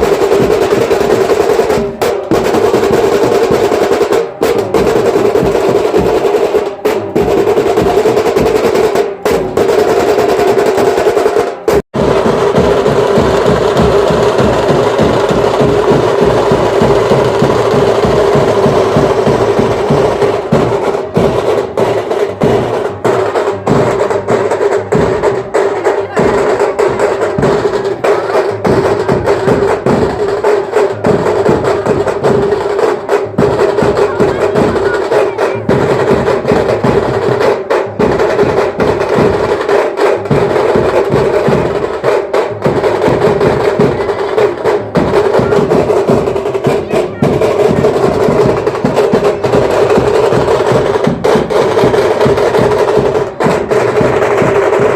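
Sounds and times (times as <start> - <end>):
fast dense drumming: 0.0 - 54.9.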